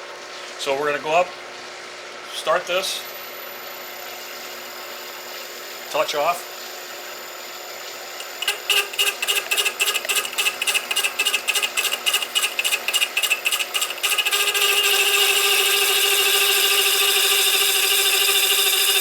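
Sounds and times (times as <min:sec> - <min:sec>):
saw cutting metal whine: 0:08.2 - 0:19.0.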